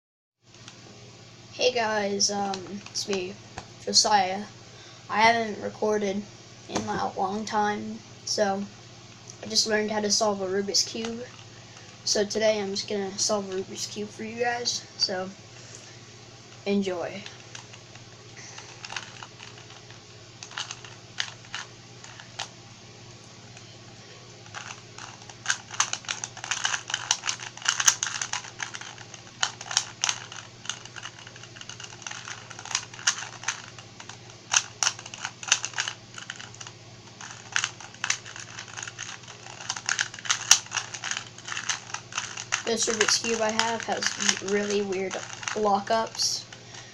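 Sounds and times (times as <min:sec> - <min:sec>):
puzzle cube clicking: 0:20.4 - 0:22.5, 0:24.5 - 0:46.4.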